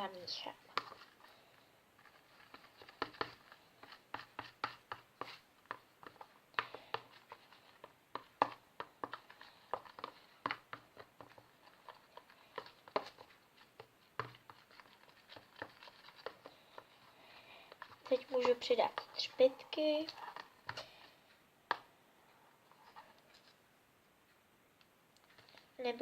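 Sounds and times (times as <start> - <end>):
utensil stirring in a bowl: 0.0 - 21.8.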